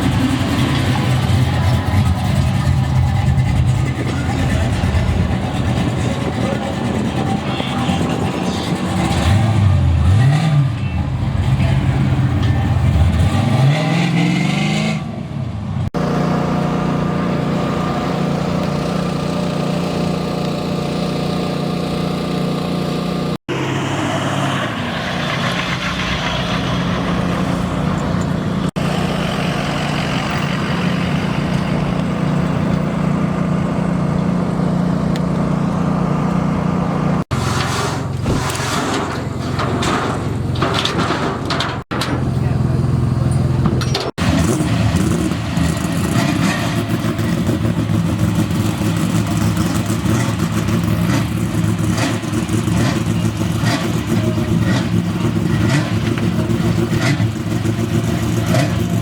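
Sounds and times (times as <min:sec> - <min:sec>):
engines idling: 0:00.0 - 0:13.3, 0:15.4 - 0:59.0
car engine revving: 0:23.0 - 0:59.0.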